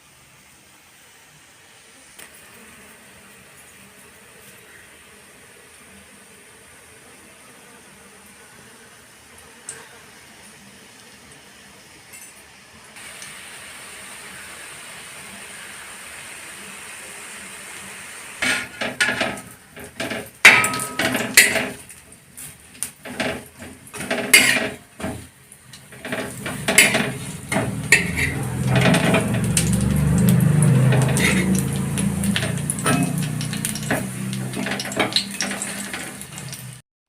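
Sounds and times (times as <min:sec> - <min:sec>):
oil sizzling: 0:13.0 - 0:36.8
metal spatula scraping a pan: 0:18.4 - 0:36.7
low rumbling noise: 0:25.9 - 0:36.4.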